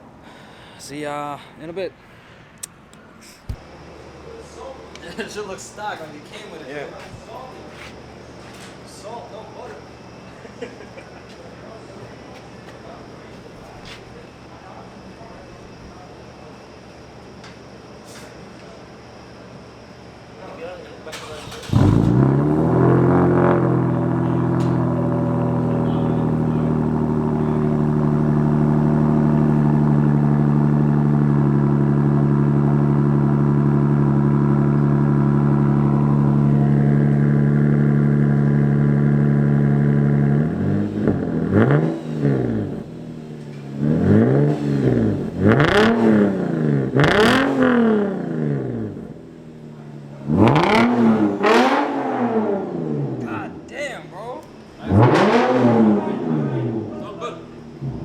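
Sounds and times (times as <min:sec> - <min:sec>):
car exhaust droning and revving: 0:21.3 - 0:53.7, 0:54.5 - 0:58.0.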